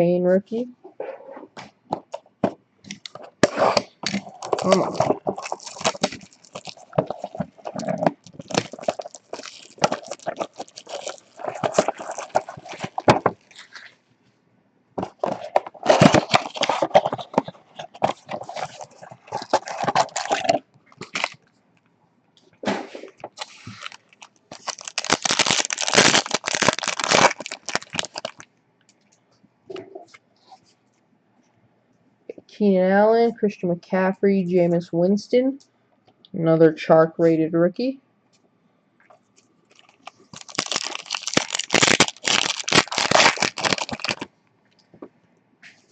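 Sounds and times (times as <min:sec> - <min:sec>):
wrappers torn open and crinkled: 0:03.0 - 0:14.0, 0:15.0 - 0:21.4, 0:23.2 - 0:28.4, 0:39.7 - 0:44.3
cards handled: 0:15.0 - 0:21.4.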